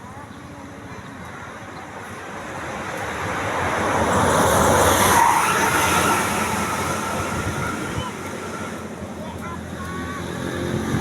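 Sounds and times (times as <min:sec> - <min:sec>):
vehicle passing by: 0:02.3 - 0:11.0.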